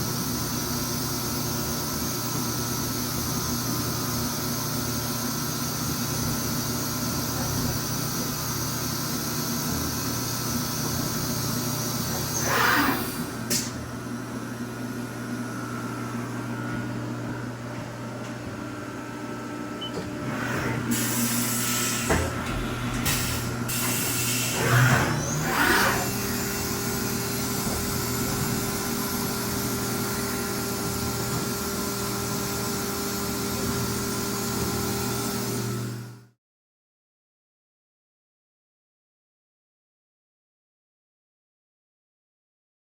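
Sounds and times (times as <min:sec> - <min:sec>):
machining centre humming: 0:11.6 - 0:32.2.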